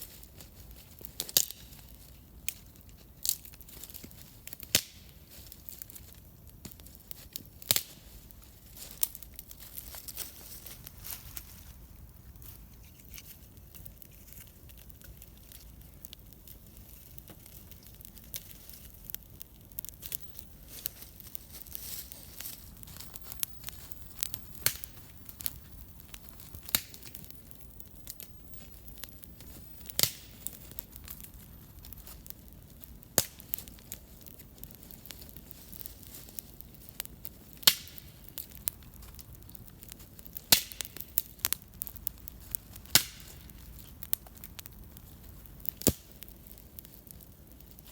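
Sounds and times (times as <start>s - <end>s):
campfire crackling and popping: 0.0s - 47.9s.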